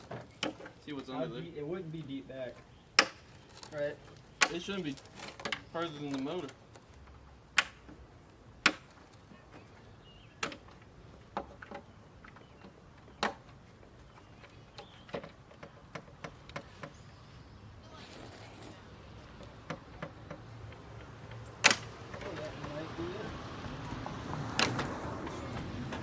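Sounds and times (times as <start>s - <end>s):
rustle: 0.0s - 15.5s, 16.5s - 19.5s.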